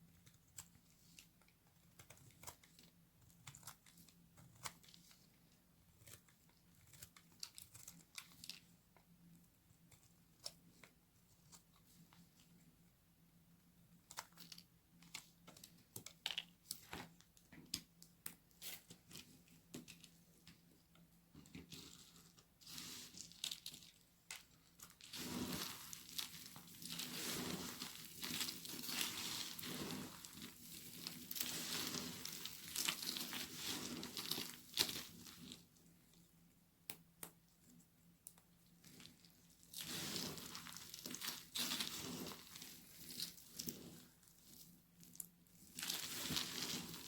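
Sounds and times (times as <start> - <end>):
soap crackling and crunching: 0.1 - 9.1, 21.6 - 35.8, 38.2 - 47.0.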